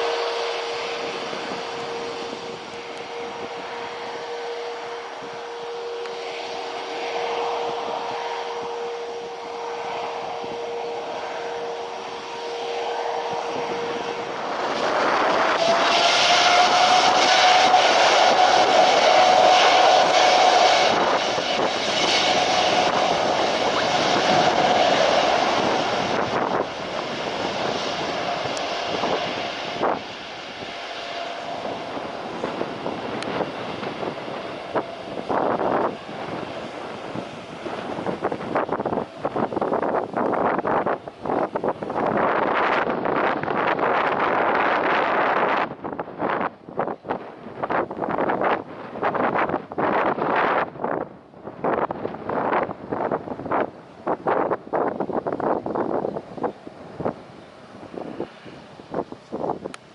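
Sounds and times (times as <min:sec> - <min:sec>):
jet engines roaring and whining: 0:00.0 - 0:59.9
wind buffeting microphone: 0:00.0 - 0:59.9.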